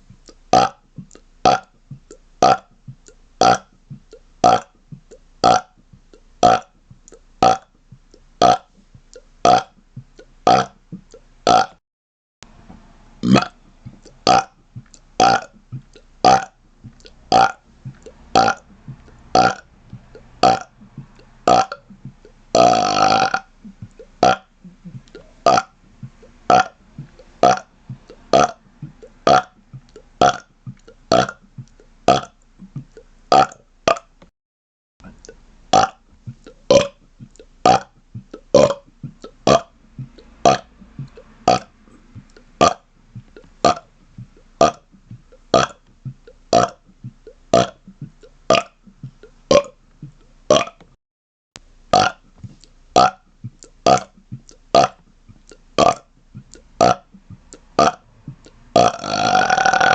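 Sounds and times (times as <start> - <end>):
man burping: 13.2 - 14.6, 19.4 - 19.7, 21.5 - 25.8, 58.8 - 59.9.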